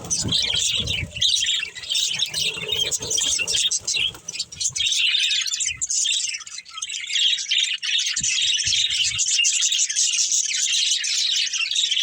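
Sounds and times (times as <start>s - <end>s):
budgerigars chirping: 0.0s - 8.1s.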